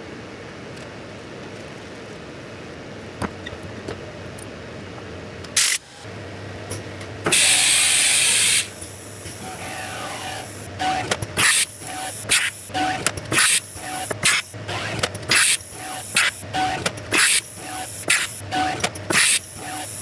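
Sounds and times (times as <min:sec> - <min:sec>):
machine shop hum: 0:05.4 - 0:20.0
compressed air blow gun blasts: 0:07.3 - 0:20.0.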